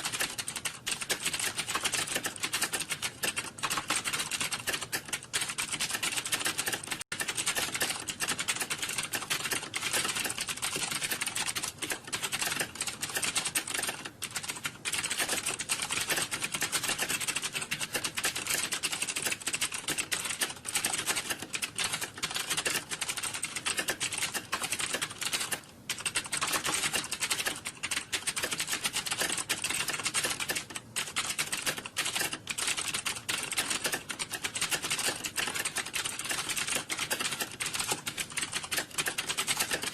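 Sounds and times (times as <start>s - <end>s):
keyboard typing: 0.0s - 39.9s.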